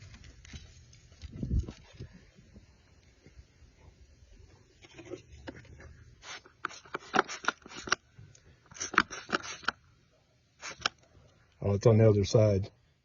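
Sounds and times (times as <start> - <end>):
spray bottle squirting: 6.2 - 8.0, 8.7 - 9.8, 10.6 - 11.0.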